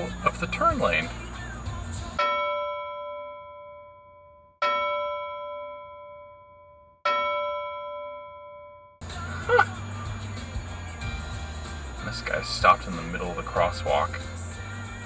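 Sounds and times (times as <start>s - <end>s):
bell-like chime ringing: 2.2s - 9.0s.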